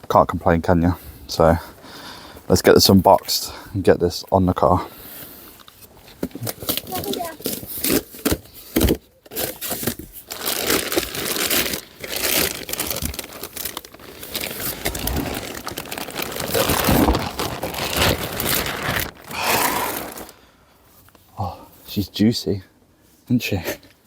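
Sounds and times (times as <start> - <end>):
packaging crinkling and tearing: 6.3 - 20.4.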